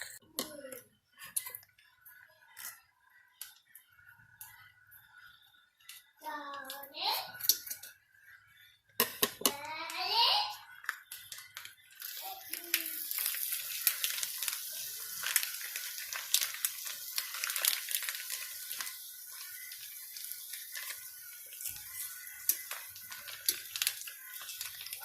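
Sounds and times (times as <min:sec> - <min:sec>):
plastic packets crinkling and tearing: 0:10.9 - 0:25.0.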